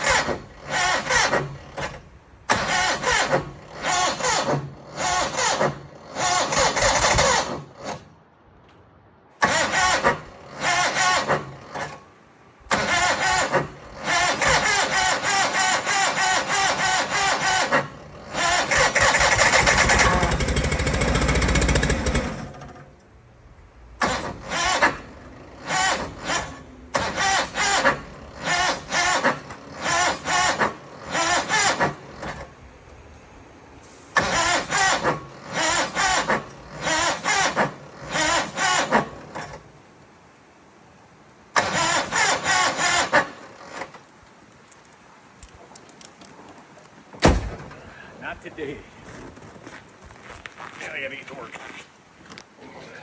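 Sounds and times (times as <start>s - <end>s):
engine starter cranking: 0.0s - 8.1s, 9.4s - 23.1s, 24.0s - 32.6s, 33.8s - 39.6s, 41.5s - 44.2s.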